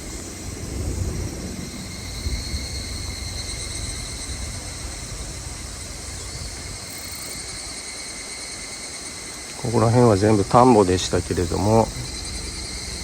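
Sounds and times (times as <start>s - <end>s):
wind on microphone: 0.0s - 7.8s
insect chorus droning: 0.0s - 13.0s.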